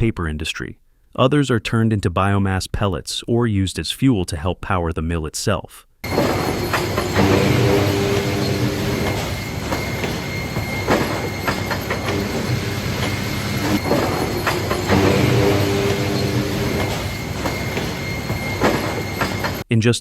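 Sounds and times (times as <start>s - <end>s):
faint high whine: 6.0s - 19.6s
sawmill machinery clatter and hum: 6.0s - 19.6s.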